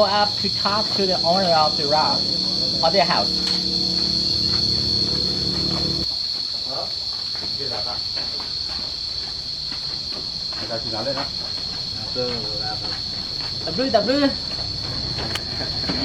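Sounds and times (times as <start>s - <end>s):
cicadas droning: 0.0s - 16.0s
low hum: 0.6s - 6.0s.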